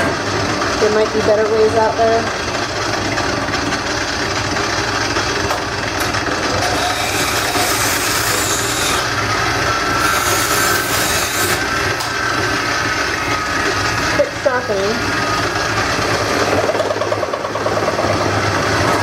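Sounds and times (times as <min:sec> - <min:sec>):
wood lathe humming: 0:00.0 - 0:19.0
turning tool scraping wood: 0:06.3 - 0:09.2, 0:09.9 - 0:11.7.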